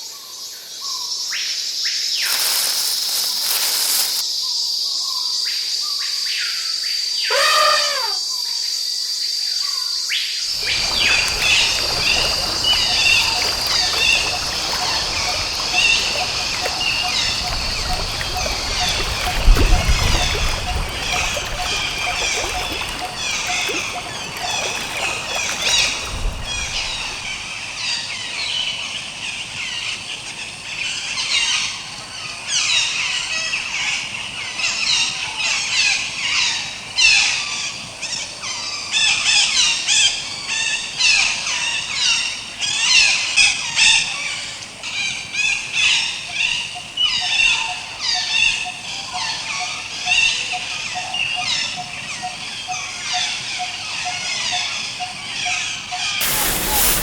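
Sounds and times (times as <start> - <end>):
flock of birds chirping: 10.5 - 27.4, 56.2 - 57.0.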